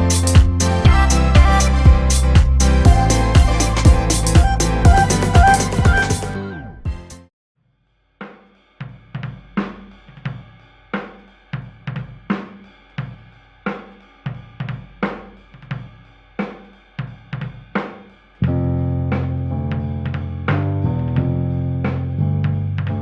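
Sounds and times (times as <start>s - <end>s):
band playing: 0.0s - 7.2s
drum and cymbal hits: 0.0s - 7.2s, 8.2s - 18.4s.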